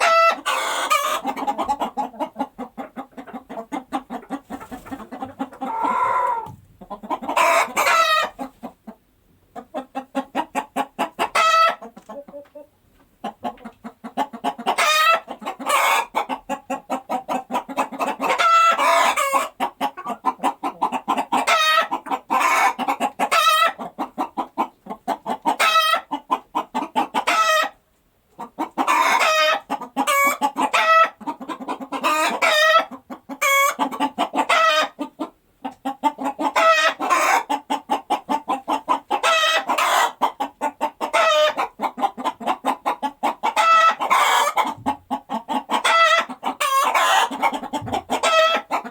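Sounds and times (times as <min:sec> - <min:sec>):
hen cackling: 0:00.0 - 0:08.5, 0:09.6 - 0:27.8, 0:28.4 - 0:35.1, 0:35.9 - 0:48.9.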